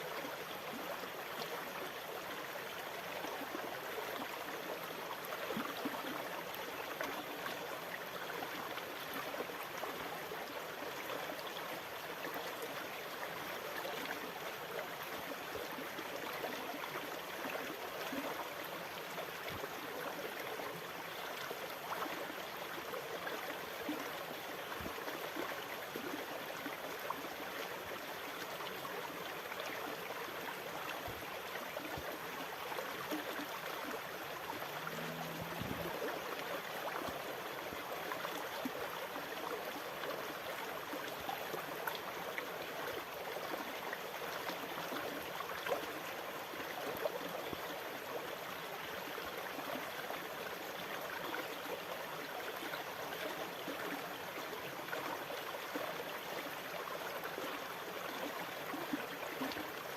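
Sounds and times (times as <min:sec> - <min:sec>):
sea water rushing and trickling: 0:32.2 - 0:38.4.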